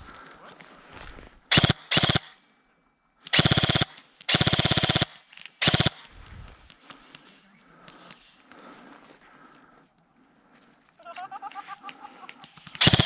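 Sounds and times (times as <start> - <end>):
airsoft gun firing full auto: 1.5 - 2.4, 3.3 - 6.1, 12.8 - 13.0.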